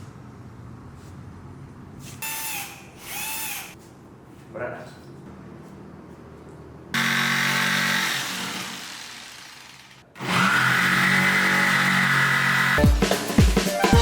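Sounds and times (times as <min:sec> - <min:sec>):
electric power tool cutting wood: 0:07.0 - 0:12.8.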